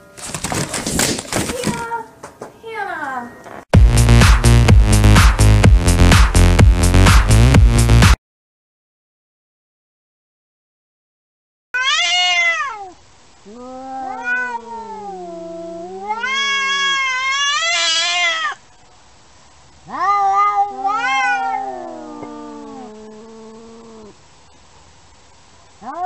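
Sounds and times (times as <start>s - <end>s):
cat yowling: 11.8s - 18.6s, 19.8s - 24.2s, 25.8s - 26.0s.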